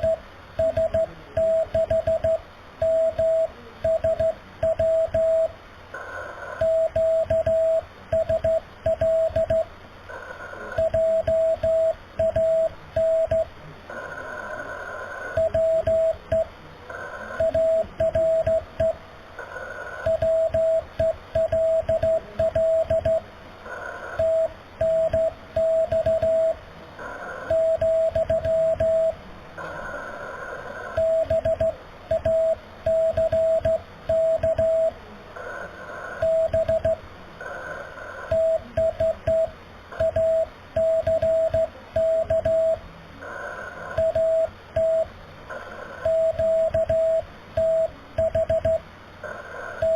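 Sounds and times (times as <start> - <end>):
morse code tone: 0.0 - 5.5, 6.6 - 9.7, 10.8 - 13.5, 17.4 - 19.0, 20.0 - 23.2, 24.2 - 26.6, 27.5 - 29.2, 31.0 - 35.0, 36.2 - 37.0, 38.3 - 42.8, 43.9 - 45.1, 46.0 - 48.8
radio static and hiss: 0.0 - 49.9.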